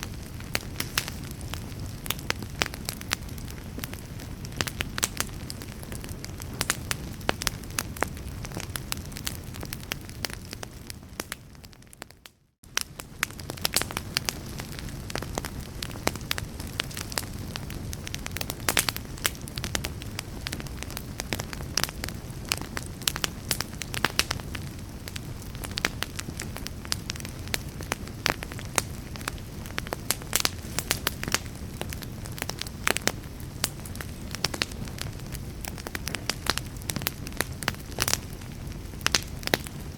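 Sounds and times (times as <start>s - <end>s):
wood fire crackling: 0.0s - 39.9s.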